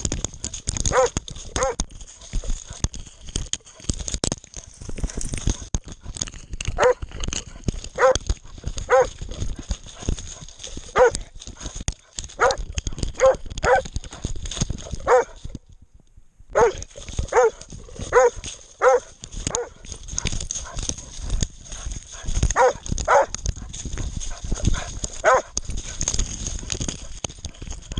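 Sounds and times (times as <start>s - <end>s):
camera knocking and rustling: 0.0s - 15.7s, 16.6s - 27.9s
dog barking: 0.9s - 1.8s, 6.8s - 7.0s, 8.0s - 8.2s, 8.9s - 9.2s, 10.9s - 11.2s, 12.4s - 12.6s, 13.2s - 13.9s, 15.0s - 15.4s, 16.6s - 19.8s, 22.6s - 23.3s, 25.2s - 25.5s.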